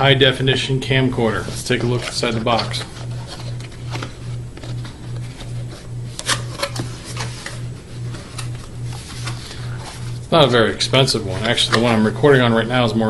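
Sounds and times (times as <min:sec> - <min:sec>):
cardboard packaging rustling: 0:01.1 - 0:12.5.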